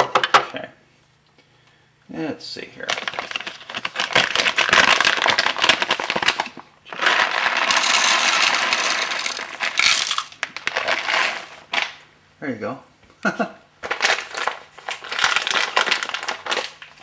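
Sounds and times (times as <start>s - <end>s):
coffee grinder grinding beans: 2.9s - 12.0s, 13.8s - 17.0s.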